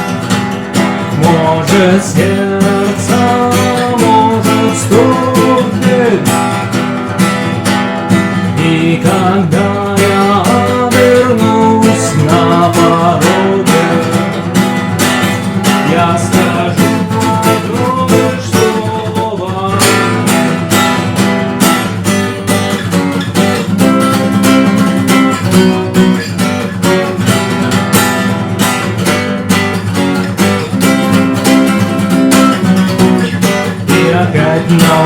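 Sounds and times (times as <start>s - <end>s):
acoustic guitar strumming: 0.0s - 35.0s.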